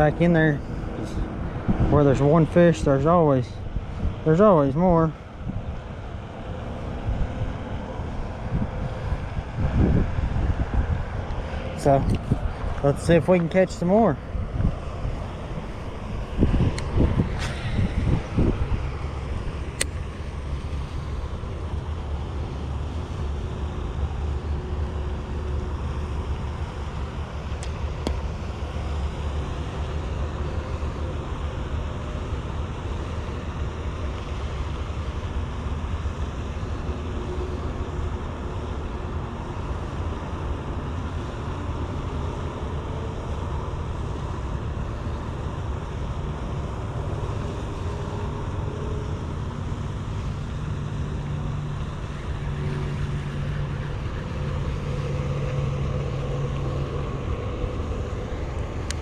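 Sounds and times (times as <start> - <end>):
wind buffeting microphone: 0.0 - 13.4, 14.2 - 22.0.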